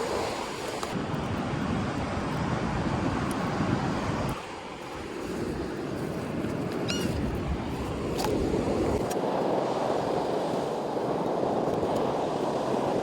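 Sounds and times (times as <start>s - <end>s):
wind buffeting microphone: 0.1s - 13.0s.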